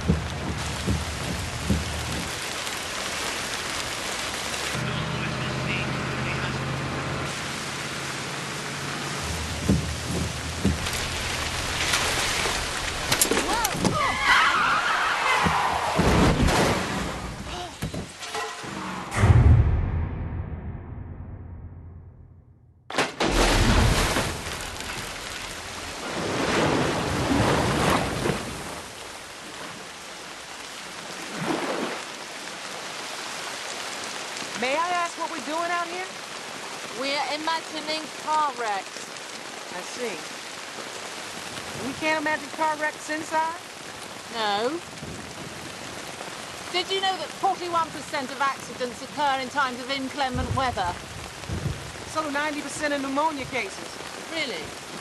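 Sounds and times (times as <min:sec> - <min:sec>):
short dull thumps: 0:00.0 - 0:02.4, 0:09.3 - 0:11.2
heavy rainfall: 0:00.0 - 0:19.4, 0:22.9 - 0:55.0.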